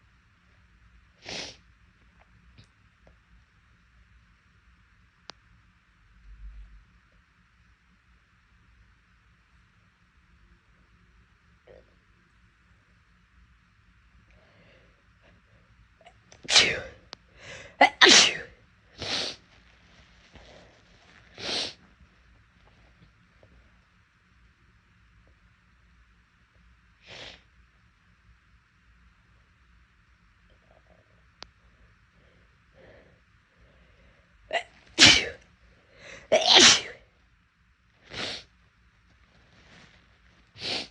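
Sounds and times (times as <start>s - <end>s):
person sneezing loudly: 16.4s - 19.4s, 34.5s - 35.4s, 36.2s - 37.0s.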